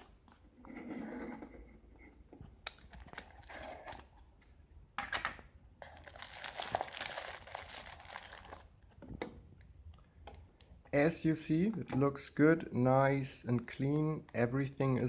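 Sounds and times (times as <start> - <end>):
packaging crinkling and rustling: 5.8 - 8.7.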